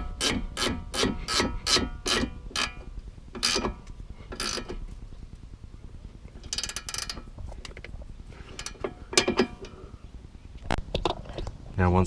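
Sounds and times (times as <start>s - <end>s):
hand ratchet clicking: 0.2s - 2.8s, 3.4s - 4.8s, 6.4s - 7.8s, 8.6s - 9.5s.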